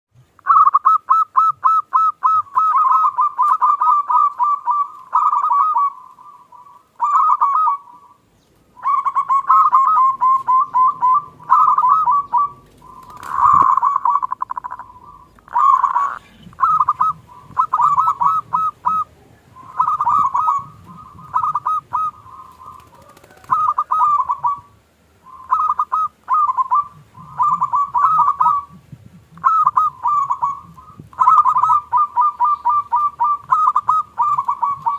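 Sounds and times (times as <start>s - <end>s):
dove cooing: 0.4s - 34.9s.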